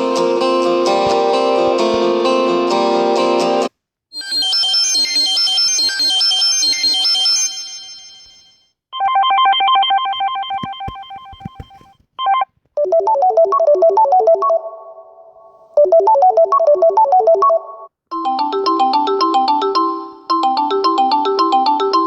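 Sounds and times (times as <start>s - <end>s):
high chiming ringtone melody: 4.2s - 15.2s, 15.8s - 22.0s
lower ringtone melody: 4.2s - 22.0s.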